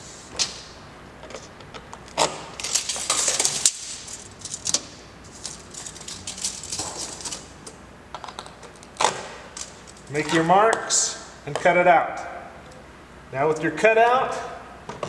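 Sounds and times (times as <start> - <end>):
sheet metal clinks and rattles: 2.6 - 7.5.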